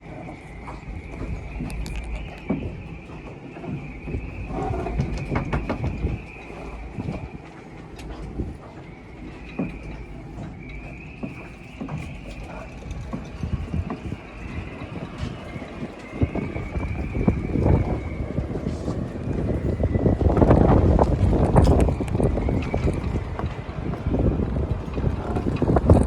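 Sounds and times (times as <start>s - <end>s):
wind buffeting microphone: 0.0s - 26.0s
wind whistling in rigging: 0.0s - 26.0s.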